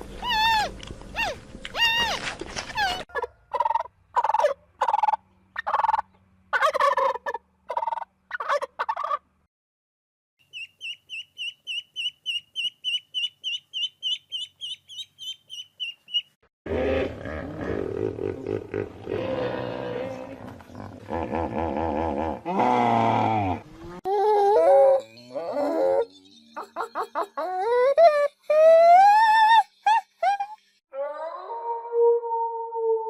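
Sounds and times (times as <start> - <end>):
turkey gobbling: 3.1 - 9.2.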